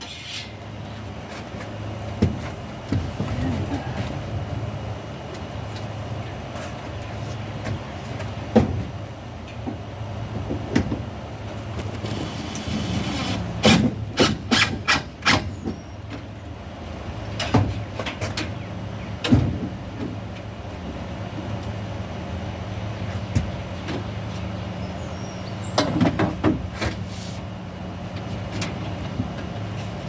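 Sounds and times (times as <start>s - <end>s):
steady low hum: 11.2s - 15.2s.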